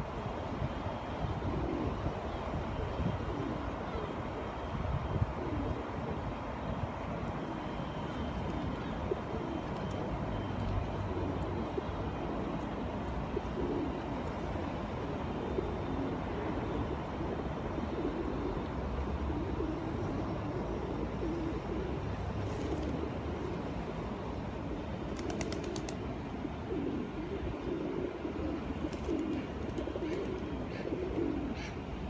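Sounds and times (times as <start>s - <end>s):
pigeons cooing: 8.5s - 32.0s.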